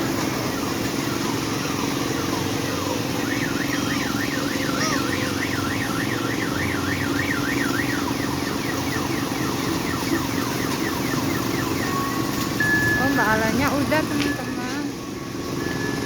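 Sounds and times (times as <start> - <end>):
ride motor hum: 0.0 - 16.0
warbling electronic siren: 0.0 - 16.0.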